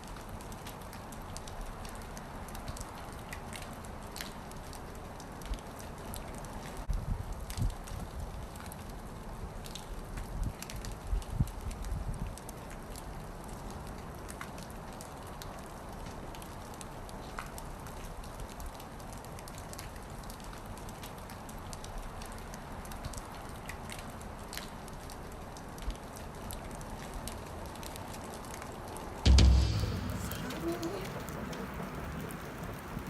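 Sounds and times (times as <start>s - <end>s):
wet snow pattering on surfaces: 0.0s - 33.0s
low rumble: 29.3s - 33.0s.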